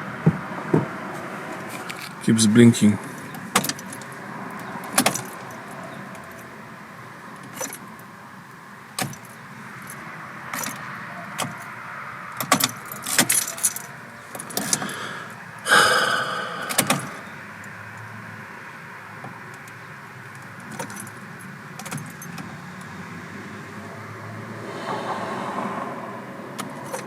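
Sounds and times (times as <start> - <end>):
clicks and knocks of car controls: 3.3 - 4.0, 4.6 - 5.3, 9.0 - 9.3, 11.4 - 11.6, 12.4 - 13.5, 16.7 - 17.1, 21.8 - 22.5
car keys jangling: 7.4 - 7.8, 12.4 - 14.9, 20.6 - 21.2.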